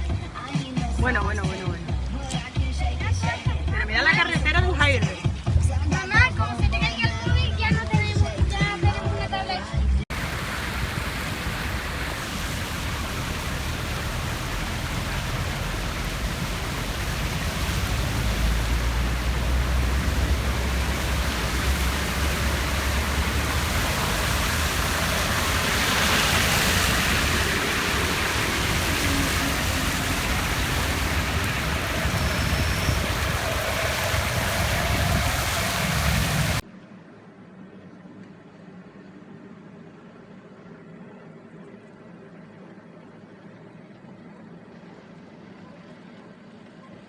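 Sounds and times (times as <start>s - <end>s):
heavy rain rushing: 10.1s - 36.6s.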